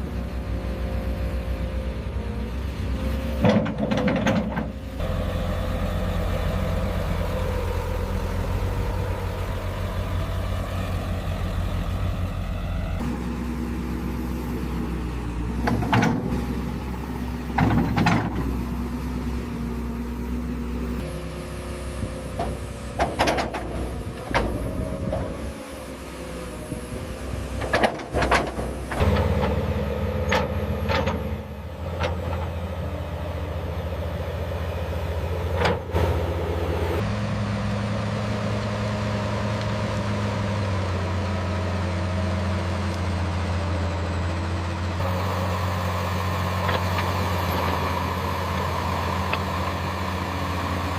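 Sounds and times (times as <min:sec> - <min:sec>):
diesel construction machinery running: 0:00.0 - 0:50.9
metallic clanks and knocks: 0:03.4 - 0:04.8, 0:15.6 - 0:16.3, 0:17.5 - 0:18.5, 0:22.4 - 0:25.3, 0:30.2 - 0:32.5.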